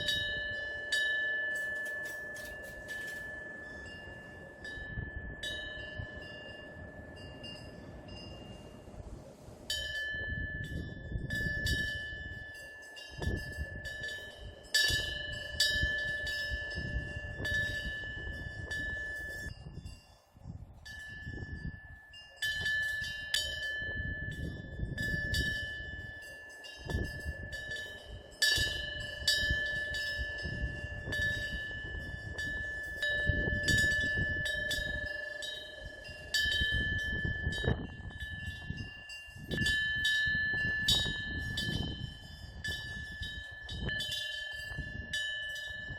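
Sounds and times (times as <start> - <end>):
wind bell ringing: 0.0 - 45.9.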